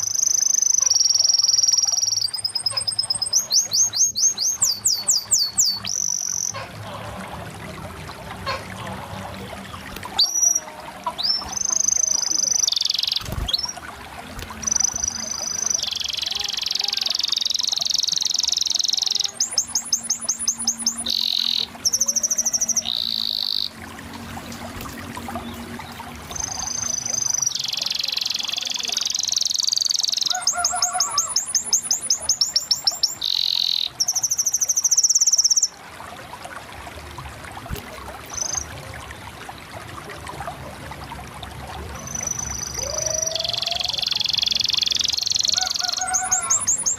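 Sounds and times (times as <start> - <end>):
canary singing: 0.0 - 6.9, 9.7 - 13.8, 14.4 - 23.8, 25.4 - 35.7, 42.0 - 46.9.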